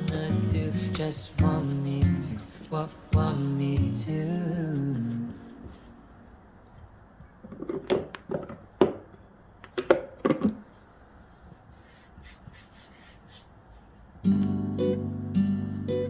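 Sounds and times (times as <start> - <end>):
kitchen items knocking and clattering: 7.4 - 9.1, 9.7 - 10.6.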